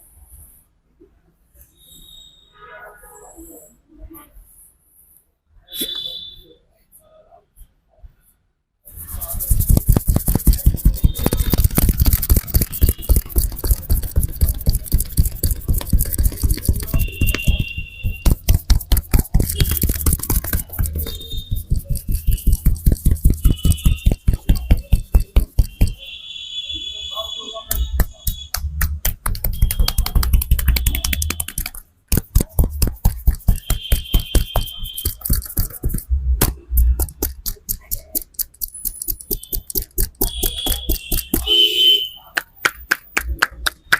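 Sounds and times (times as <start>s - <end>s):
hand slaps on head: 27.7s - 37.9s.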